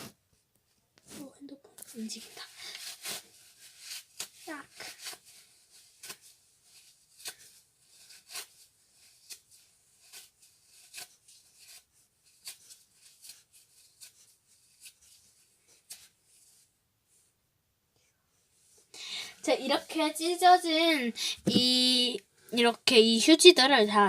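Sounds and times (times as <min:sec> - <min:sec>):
tissue paper tearing: 0:01.9 - 0:16.6.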